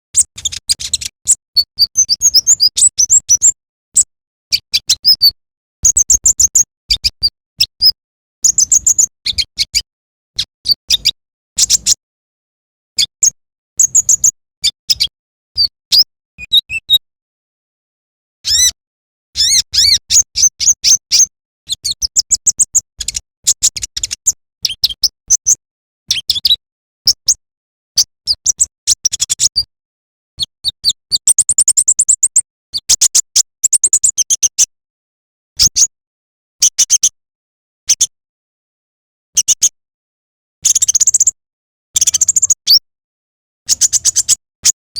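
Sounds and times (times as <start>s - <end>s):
sunbird chirps and trills: 8.4s - 9.8s, 18.5s - 18.7s, 19.4s - 23.2s.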